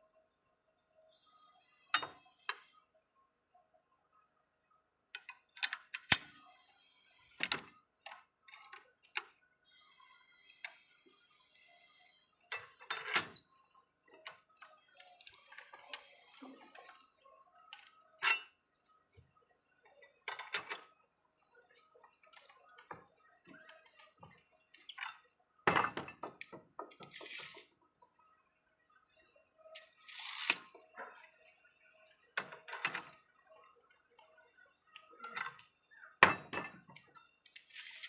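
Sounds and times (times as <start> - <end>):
steel bars clinking on bender: 18.2 - 18.5.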